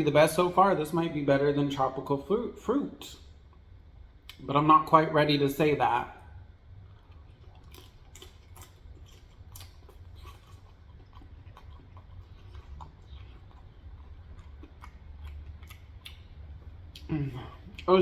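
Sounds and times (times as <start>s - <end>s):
person chewing food: 6.4s - 18.0s.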